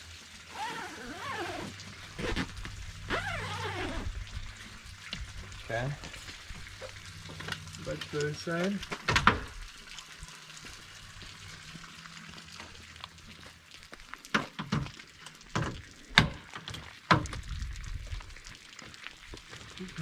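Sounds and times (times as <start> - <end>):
tent fabric rustling: 0.4 - 4.8.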